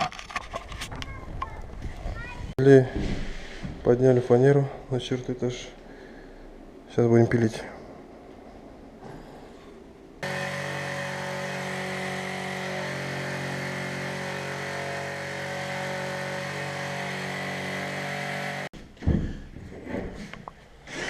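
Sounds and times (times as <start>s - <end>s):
electric power saw motor running: 10.2s - 18.7s.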